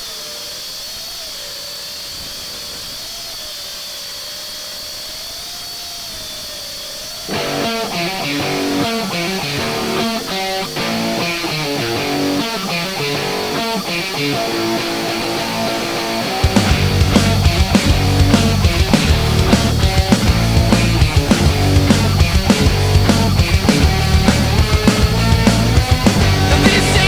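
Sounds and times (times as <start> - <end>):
quadcopter motors whining: 0.0 - 27.0
rock music with electric guitar: 7.3 - 27.0.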